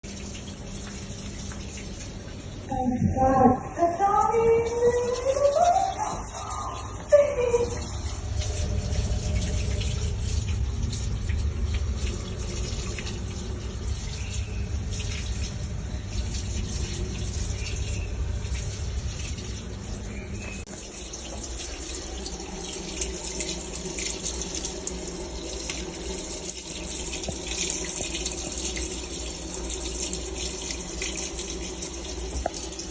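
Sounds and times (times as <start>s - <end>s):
water running: 0.0s - 32.9s
low hum: 2.5s - 20.7s.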